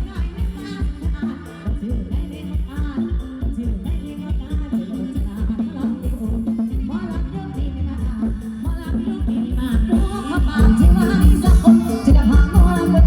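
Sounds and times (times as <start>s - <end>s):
live band music: 0.0s - 13.0s
person singing: 0.0s - 13.0s.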